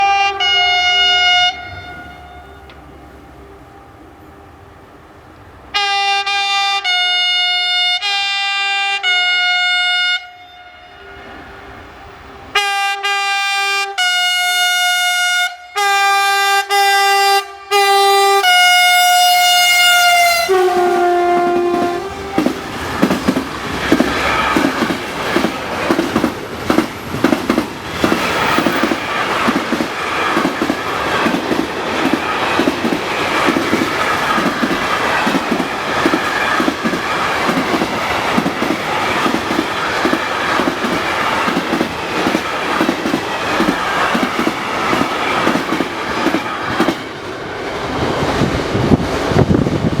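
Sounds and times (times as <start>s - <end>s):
locomotive two-tone air horn: 0.0s - 4.0s, 5.7s - 22.7s.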